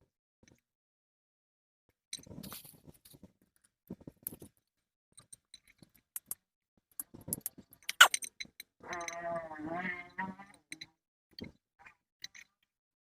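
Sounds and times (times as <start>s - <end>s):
clicks and snips of tools: 6.2s - 6.4s.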